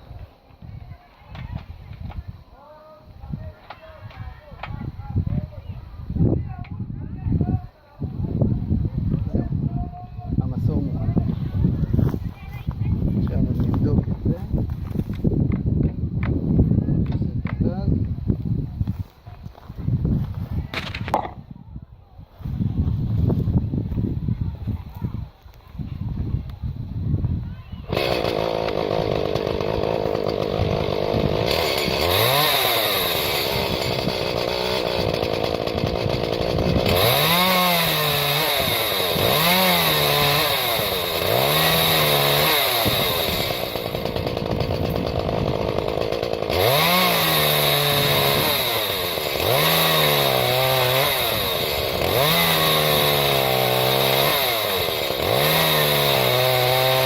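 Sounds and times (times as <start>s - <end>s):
chainsaw engine idling and revving: 27.9s - 57.0s.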